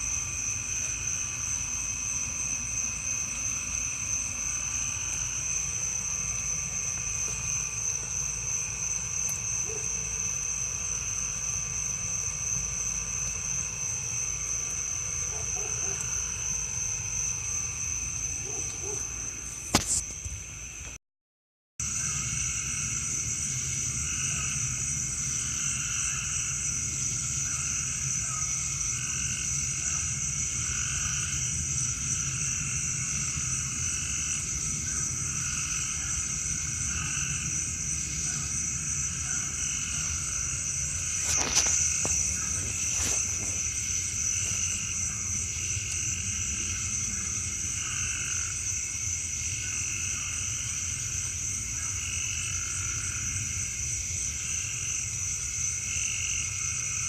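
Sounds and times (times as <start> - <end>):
low steady hum: 0.0 - 20.8
frogs and insects calling: 0.0 - 21.0, 21.8 - 57.0.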